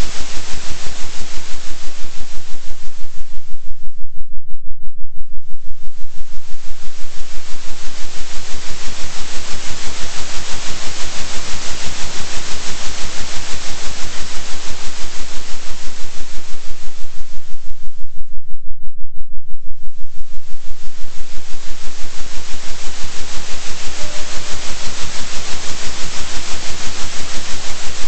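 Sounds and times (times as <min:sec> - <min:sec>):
pulsing noise hiss: 0:00.0 - 0:04.0, 0:05.4 - 0:18.2, 0:19.8 - 0:28.0
steady low hum: 0:00.0 - 0:28.0.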